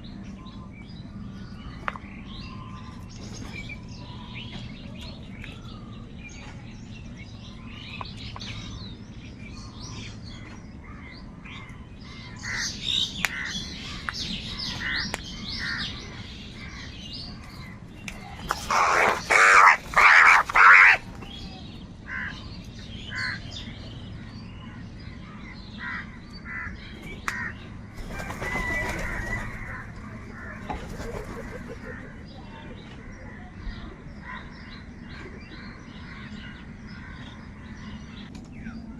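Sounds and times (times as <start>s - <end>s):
birds chirping: 0.0s - 38.9s
crows cawing: 12.3s - 16.9s, 18.5s - 21.1s, 22.0s - 22.5s, 23.1s - 23.4s, 25.2s - 30.8s.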